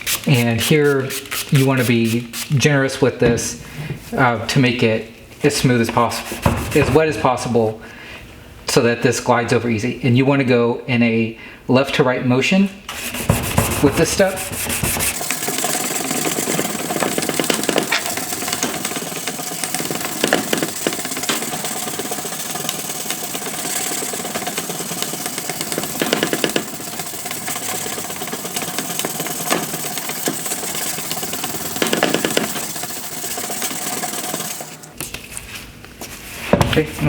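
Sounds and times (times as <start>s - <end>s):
wet sanding plastic: 0.0s - 2.7s, 12.9s - 18.0s.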